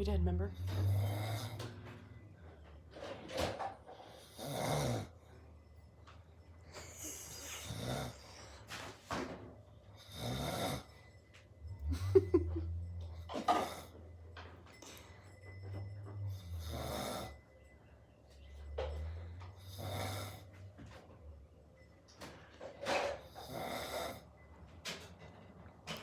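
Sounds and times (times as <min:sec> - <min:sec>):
man snoring: 0:00.8 - 0:01.6, 0:04.3 - 0:05.1, 0:07.6 - 0:08.3, 0:10.0 - 0:10.9, 0:19.6 - 0:20.5, 0:23.4 - 0:24.2.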